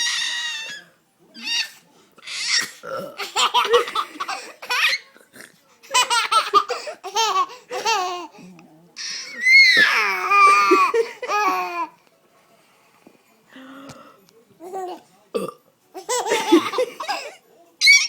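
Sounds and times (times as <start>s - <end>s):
baby laughing: 1.4s - 5.1s, 5.8s - 8.4s, 9.0s - 11.9s, 16.0s - 18.0s.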